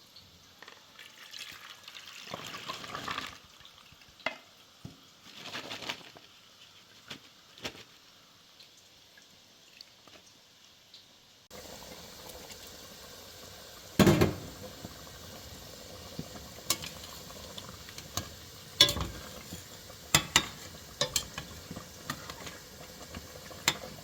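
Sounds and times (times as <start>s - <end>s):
water splashing and pouring: 0.9s - 4.0s.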